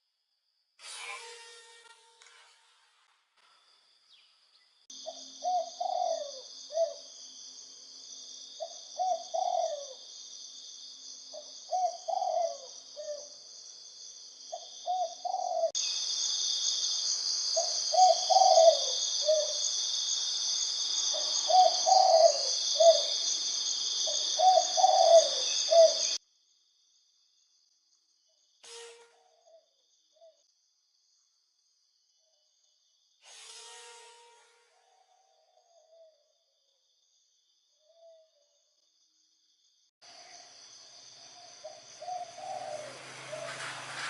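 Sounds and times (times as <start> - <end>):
high insect drone: 4.9 - 29.3, 30.6 - 34.7
dove cooing: 5.0 - 7.0, 8.6 - 10.0, 11.4 - 13.2, 14.8 - 15.7, 17.9 - 19.5, 21.2 - 23.1, 24.1 - 26.1, 41.6 - 43.6.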